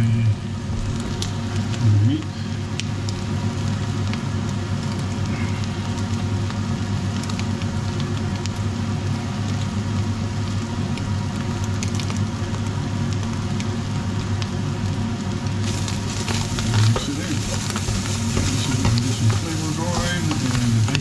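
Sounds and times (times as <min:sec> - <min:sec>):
low hum: 0:00.0 - 0:02.6
meat sizzling in a pot: 0:02.4 - 0:21.0.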